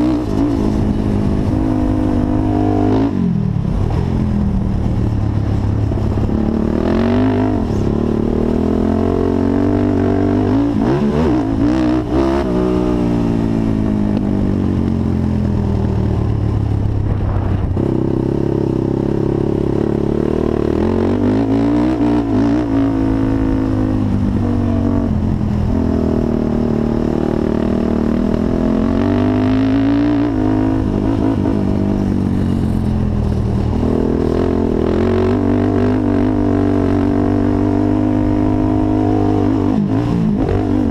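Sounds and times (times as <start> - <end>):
quad engine revving: 6.2 - 13.6, 17.3 - 40.9.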